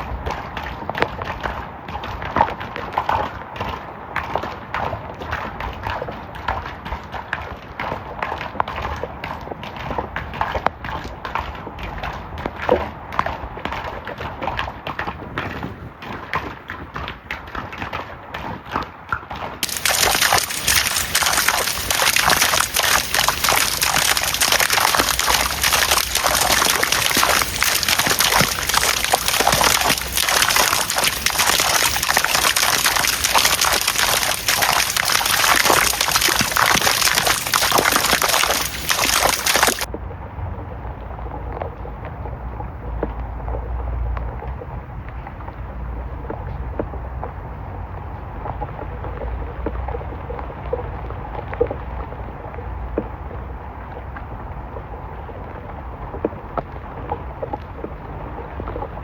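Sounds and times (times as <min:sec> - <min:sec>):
rain pattering: 0:00.0 - 0:18.2, 0:19.6 - 0:40.1, 0:40.7 - 0:59.0
heavy dense rain: 0:19.6 - 0:39.9.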